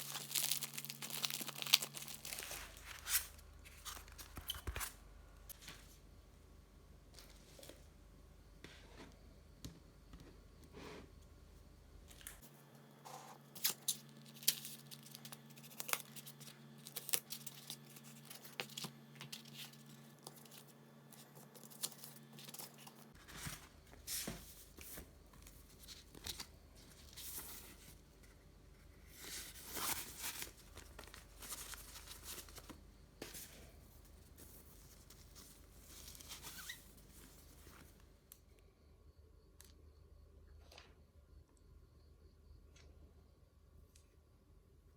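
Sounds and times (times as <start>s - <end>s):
packaging wrap tearing and crinkling: 0.0s - 4.9s, 13.5s - 23.2s, 35.3s - 36.8s.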